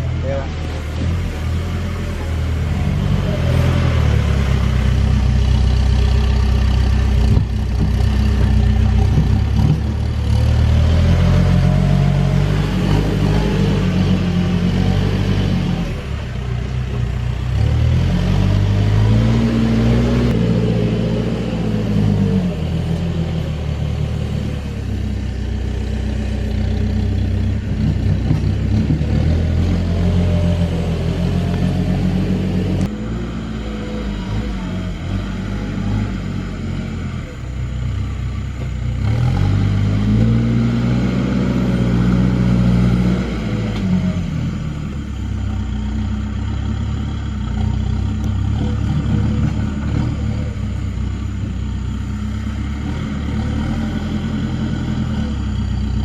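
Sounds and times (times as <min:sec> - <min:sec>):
diesel engine revving under load: 0:00.0 - 0:56.0.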